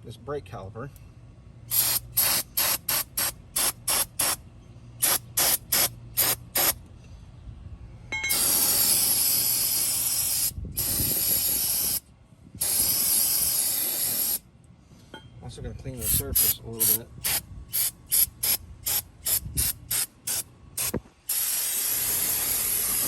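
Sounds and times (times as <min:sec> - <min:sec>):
aerosol spray hissing: 0:01.7 - 0:04.4, 0:05.0 - 0:06.8, 0:08.6 - 0:12.0, 0:12.6 - 0:14.4, 0:16.0 - 0:23.0.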